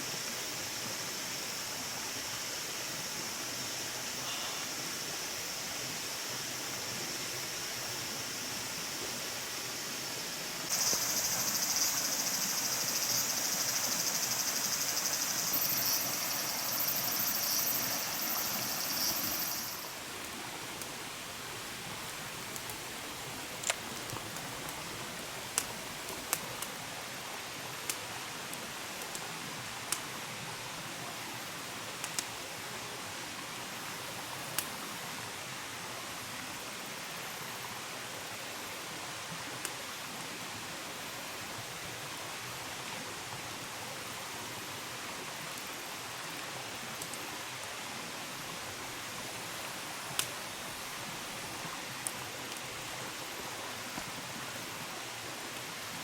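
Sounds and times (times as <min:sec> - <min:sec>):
rushing background hiss: 0:00.0 - 0:27.5.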